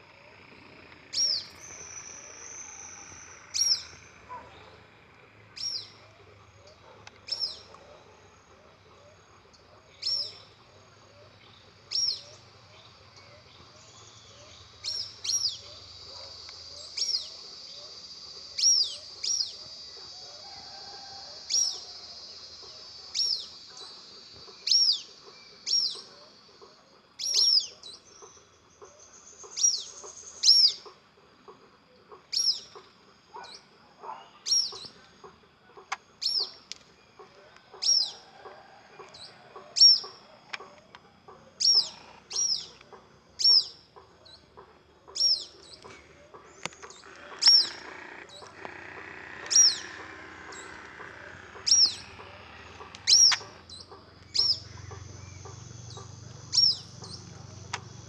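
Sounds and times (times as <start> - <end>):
bird chirping: 1.1 - 4.9, 5.5 - 20.3, 21.4 - 30.9, 35.8 - 58.0.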